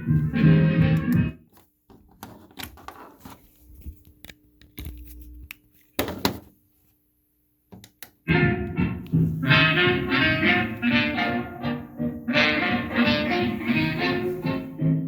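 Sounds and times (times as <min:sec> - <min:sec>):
clicks and handling noise: 0:01.0 - 0:06.5.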